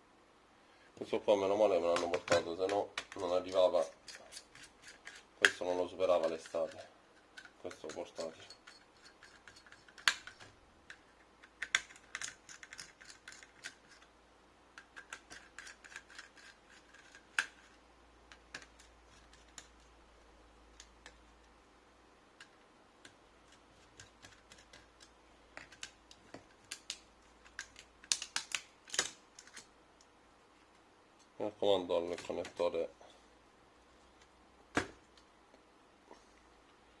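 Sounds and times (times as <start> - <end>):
laptop parts clicking and scraping: 1.7 - 21.5, 22.3 - 29.7.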